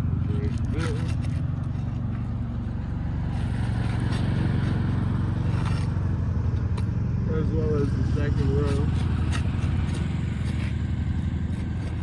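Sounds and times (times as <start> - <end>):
shingle scraping: 0.0 - 6.4, 7.9 - 12.0
low engine hum: 0.0 - 12.0.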